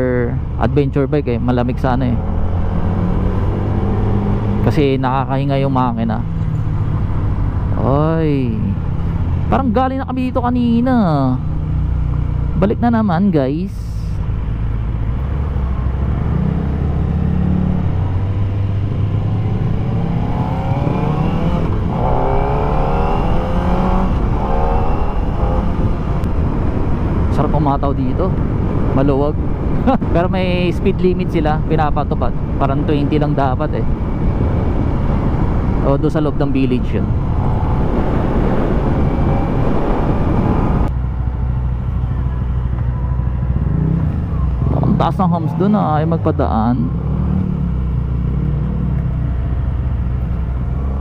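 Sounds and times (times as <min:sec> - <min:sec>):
motorcycle engine accelerating: 0:01.9 - 0:05.1, 0:14.3 - 0:27.3, 0:37.0 - 0:51.0
wind rush: 0:14.5 - 0:41.0.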